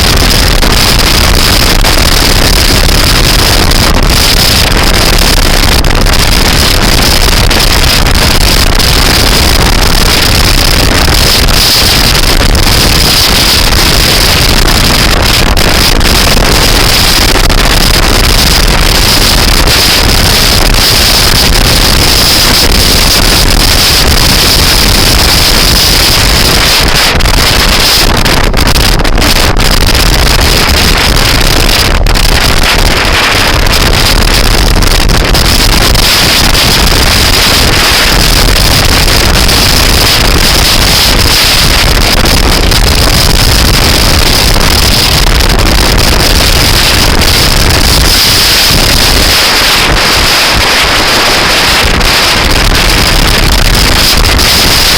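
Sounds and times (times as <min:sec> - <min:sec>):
vehicle noise: 0:00.0 - 0:54.9
wind buffeting microphone: 0:00.0 - 0:54.9.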